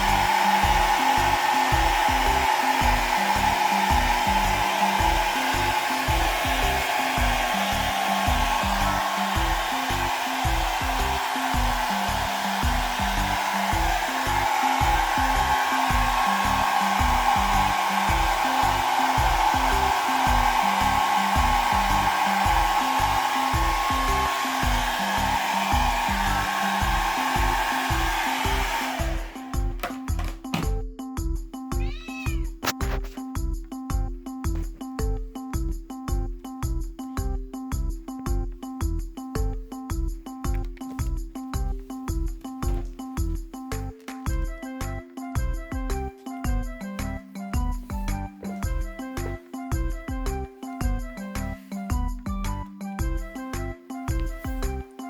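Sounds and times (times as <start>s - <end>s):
hair dryer blowing: 0.0s - 30.3s, 53.0s - 55.0s.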